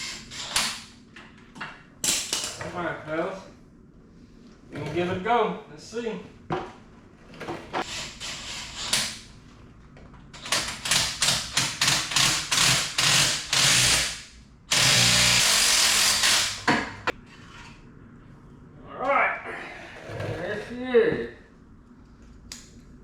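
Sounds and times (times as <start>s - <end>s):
power tool running in bursts: 12.5s - 16.7s.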